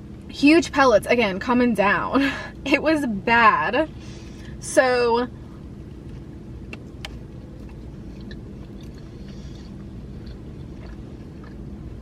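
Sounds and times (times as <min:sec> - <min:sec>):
low background hum: 0:00.0 - 0:12.0
person chewing food: 0:06.0 - 0:12.0.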